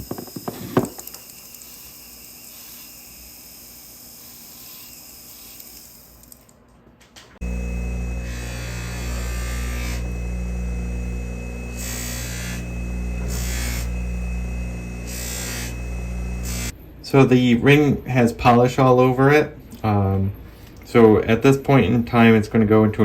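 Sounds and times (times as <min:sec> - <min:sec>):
polishing motor humming: 0:07.4 - 0:16.7.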